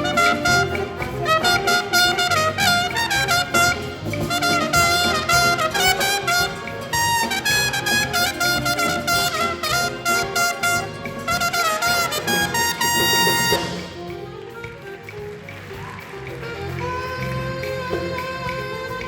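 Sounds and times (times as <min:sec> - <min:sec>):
jazz ensemble playing: 0:00.0 - 0:19.0
trumpets and trombones melody: 0:00.0 - 0:19.0.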